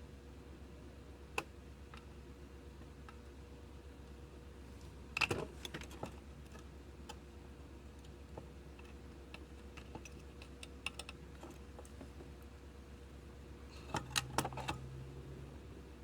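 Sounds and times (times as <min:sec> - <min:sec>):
electrical hum: 0:07.4 - 0:16.0.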